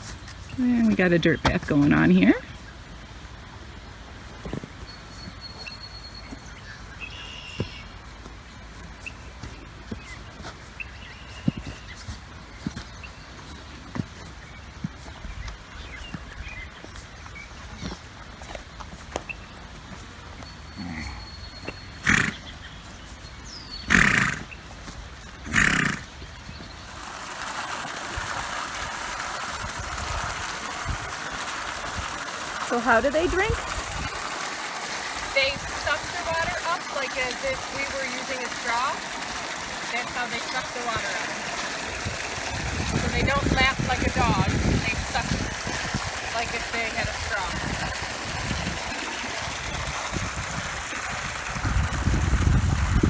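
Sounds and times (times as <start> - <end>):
water running: 0.0 - 2.7, 23.9 - 53.0
animal snorting: 20.8 - 21.3, 22.0 - 22.4, 23.9 - 24.5, 25.4 - 26.1.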